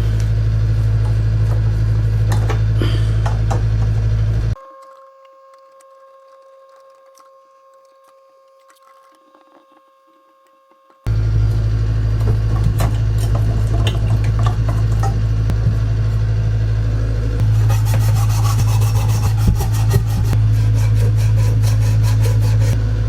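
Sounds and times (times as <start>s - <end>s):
low motor hum: 0.0s - 23.0s
rasping on copper pipe: 4.5s - 11.1s, 17.4s - 22.8s.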